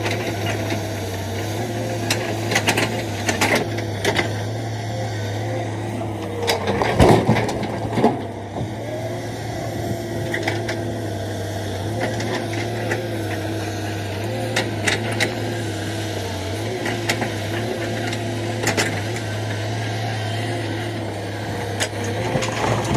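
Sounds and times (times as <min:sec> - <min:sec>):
diesel engine running: 0:00.0 - 0:22.9.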